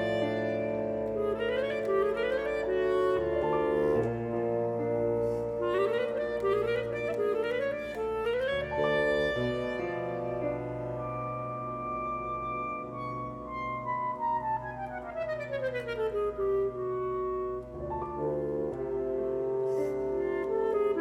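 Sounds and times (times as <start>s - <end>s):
classical music melody: 0.0s - 21.0s.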